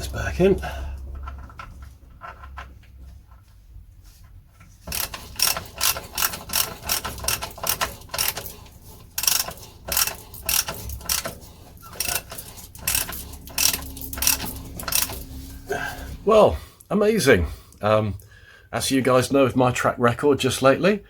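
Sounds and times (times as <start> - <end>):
ratchet wrench clicking: 4.9 - 15.5.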